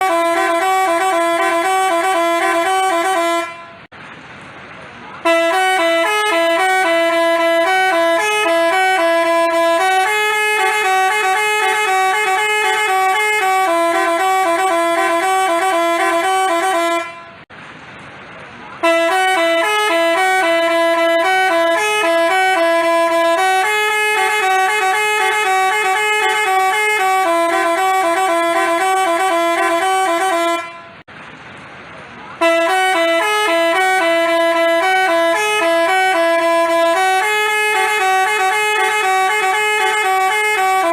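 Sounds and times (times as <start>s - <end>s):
musical bus horn melody: 0.0s - 3.9s, 5.2s - 17.5s, 18.8s - 31.1s, 32.4s - 40.9s.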